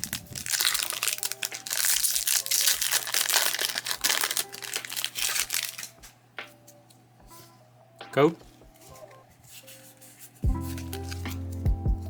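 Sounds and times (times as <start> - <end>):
foil wrapper crinkling: 0.0 - 6.2, 10.4 - 11.5.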